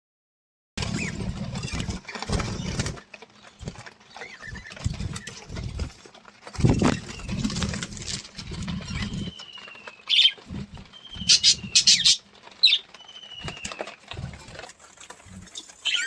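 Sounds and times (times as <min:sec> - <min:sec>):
faint bird chirps: 0:08.7 - 0:14.0.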